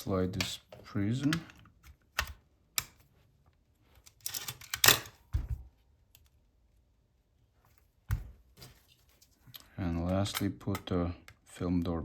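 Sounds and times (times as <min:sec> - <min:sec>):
small metal clicks and scraping: 0:03.9 - 0:05.2.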